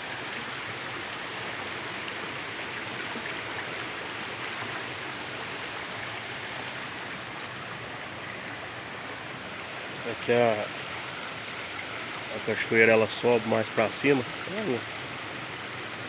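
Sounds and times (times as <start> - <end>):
waterfall rushing over rocks: 0.0 - 16.0.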